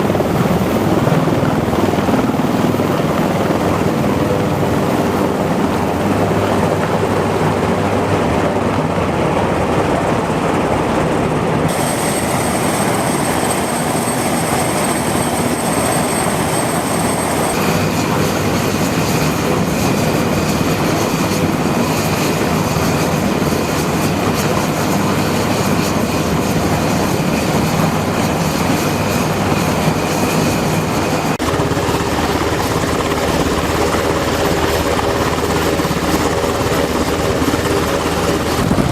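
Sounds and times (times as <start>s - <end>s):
helicopter rotor and turbine noise: 0.0s - 38.9s.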